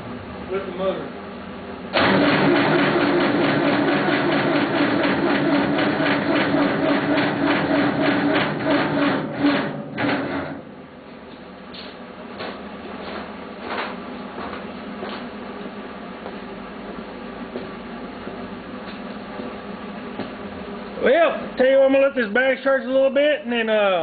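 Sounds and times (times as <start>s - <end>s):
starter cranking diesel engine: 1.9s - 10.6s.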